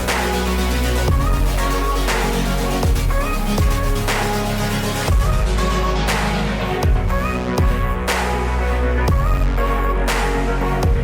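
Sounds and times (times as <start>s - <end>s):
deep kick drum: 1.1s - 1.6s, 2.8s - 4.0s, 5.1s - 5.6s, 6.8s - 8.1s, 9.1s - 9.6s.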